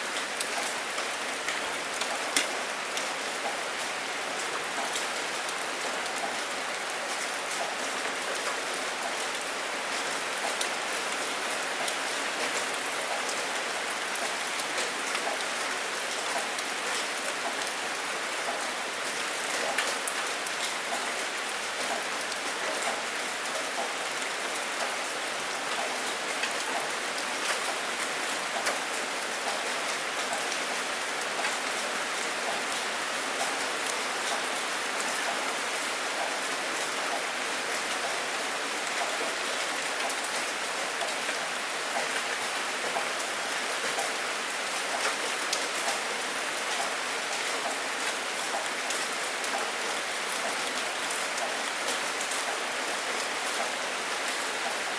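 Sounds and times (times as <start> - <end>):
raindrops pattering: 0.1 - 4.0.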